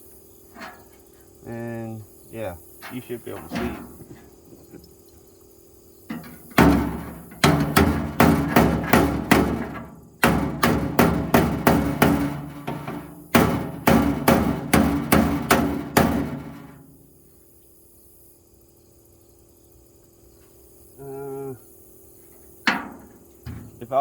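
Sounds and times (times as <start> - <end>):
hard blows on metal shelf: 6.1 - 17.1, 22.7 - 24.0.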